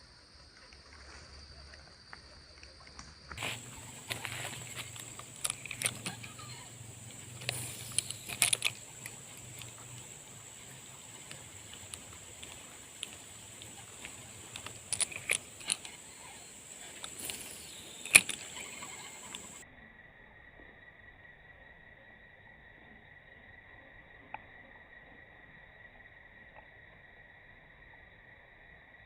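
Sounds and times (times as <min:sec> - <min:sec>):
sharp clicks and knocks: 0:03.4 - 0:19.6.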